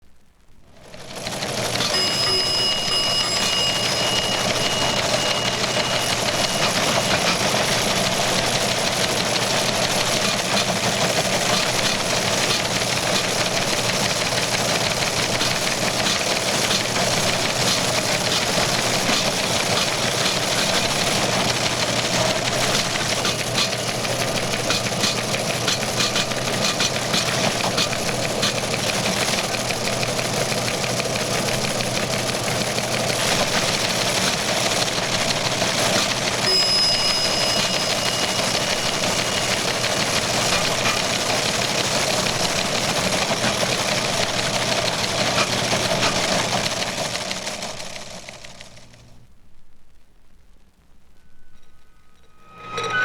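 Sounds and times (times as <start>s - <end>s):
teletype machines clattering: 1.0s - 49.0s
brief high tone: 1.8s - 9.3s, 36.0s - 41.3s, 51.1s - 53.0s.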